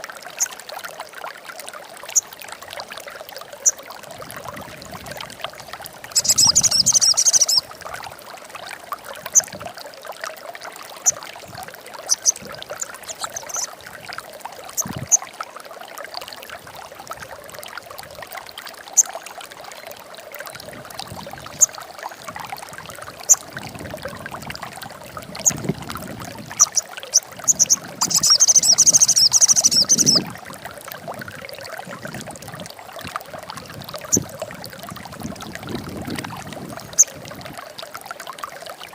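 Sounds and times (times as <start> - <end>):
bird chattering trills: 6.2 - 7.6, 27.5 - 30.2
high bird chips: 6.2 - 7.6.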